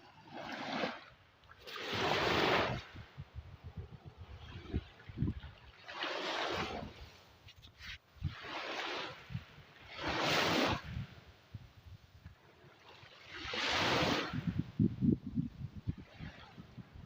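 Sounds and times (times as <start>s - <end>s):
ocean waves breaking: 0.0s - 3.2s, 4.0s - 11.2s, 12.4s - 14.6s
wind buffeting the microphone: 1.9s - 12.4s, 13.3s - 17.0s.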